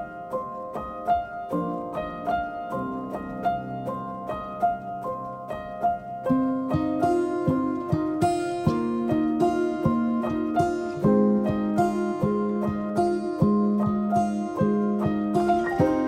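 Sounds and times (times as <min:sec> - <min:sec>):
plucked harp-like notes: 0:15.5 - 0:16.0.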